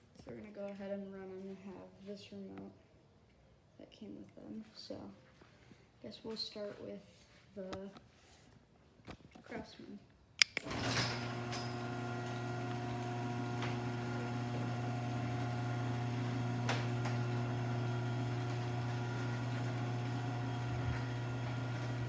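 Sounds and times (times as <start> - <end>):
garage door opener motor humming: 10.6 - 22.0.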